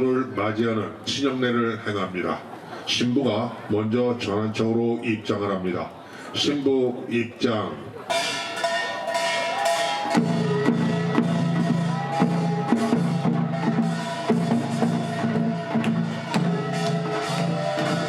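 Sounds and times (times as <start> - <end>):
drum strokes: 8.1 - 18.0.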